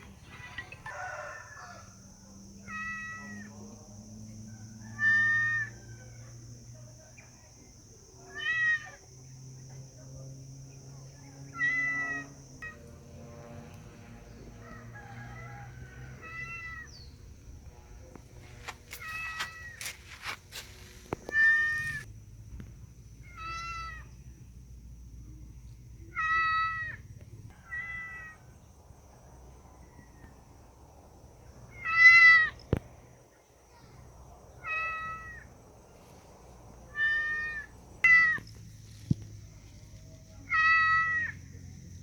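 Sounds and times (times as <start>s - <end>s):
cat meowing: 16.2s - 16.9s, 19.0s - 19.8s, 21.3s - 22.0s, 26.1s - 27.0s, 27.6s - 28.3s, 31.8s - 32.5s, 34.6s - 35.4s, 36.9s - 38.4s, 40.5s - 41.4s.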